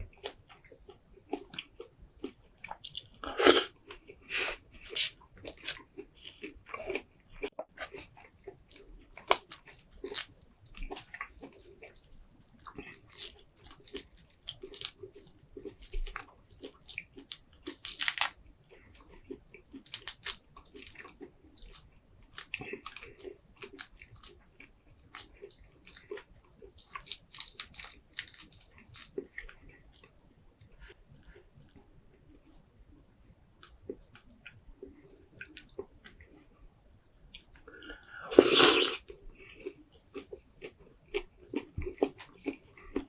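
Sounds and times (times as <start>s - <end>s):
wet chewing and biting: 4.9s - 29.7s.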